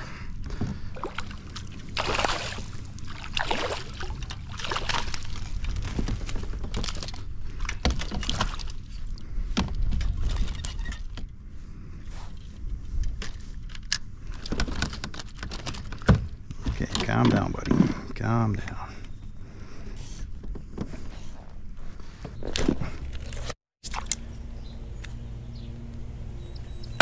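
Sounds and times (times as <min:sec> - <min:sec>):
water splashing and sloshing: 0:00.4 - 0:11.3, 0:22.6 - 0:24.3.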